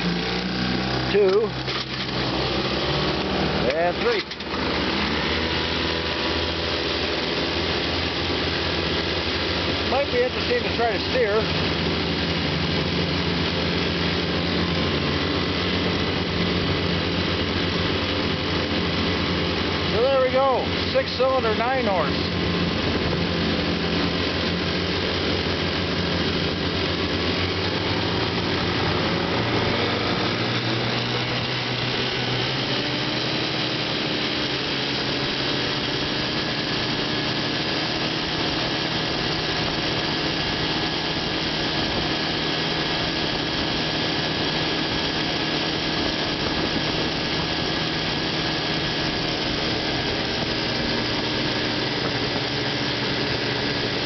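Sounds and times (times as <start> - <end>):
outboard motors running: 0.0 - 54.0.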